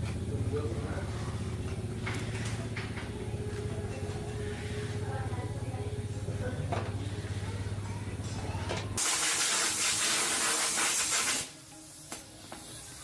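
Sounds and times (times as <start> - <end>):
loud spraying hiss: 9.0 - 13.0.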